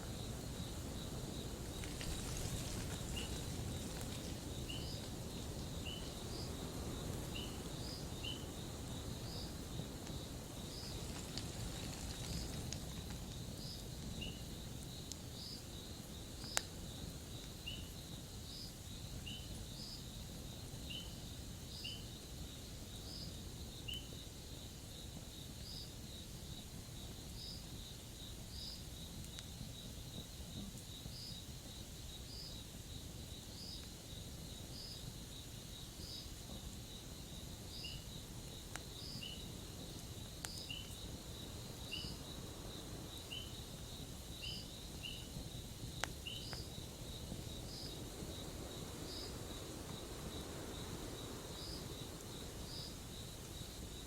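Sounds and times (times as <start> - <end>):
insect chirp: 0.0 - 54.0
insects trilling: 0.0 - 54.0
campfire crackling: 0.1 - 19.6, 26.3 - 54.0.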